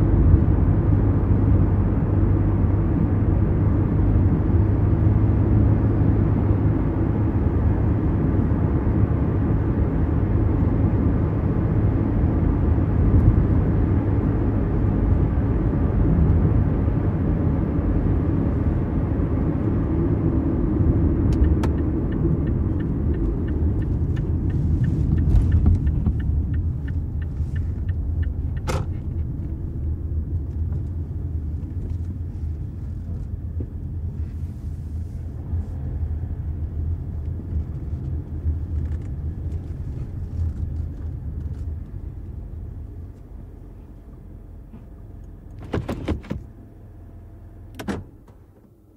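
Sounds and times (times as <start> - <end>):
car engine and road rumble: 0.0 - 48.9.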